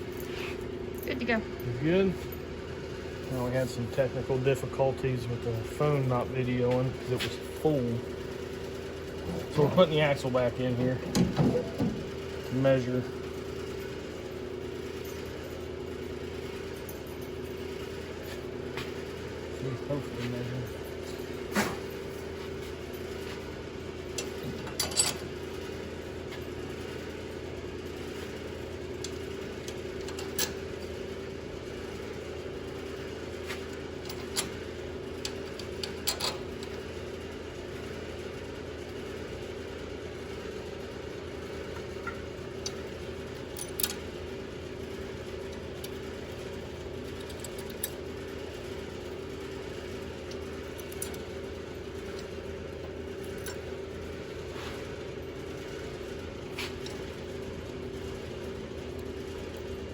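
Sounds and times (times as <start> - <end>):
mechanical hum: 0.0 - 59.9
metallic clinks and clanks: 24.2 - 25.2.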